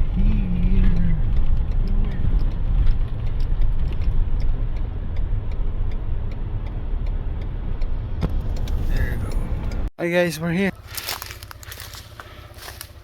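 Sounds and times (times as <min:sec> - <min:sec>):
car engine and tyres rumbling: 0:00.0 - 0:13.0
light ticks: 0:00.8 - 0:09.9.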